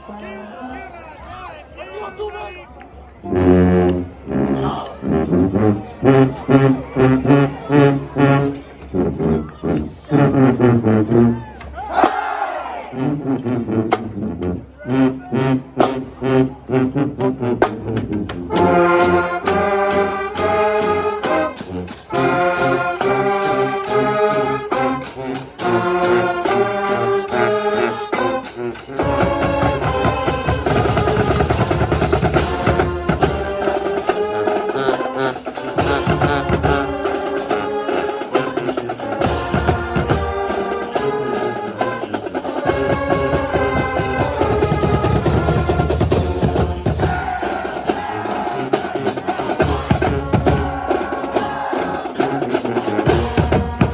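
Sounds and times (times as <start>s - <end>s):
brass sustaining chords: 12.8s - 53.9s
drums playing a steady beat: 28.2s - 53.9s.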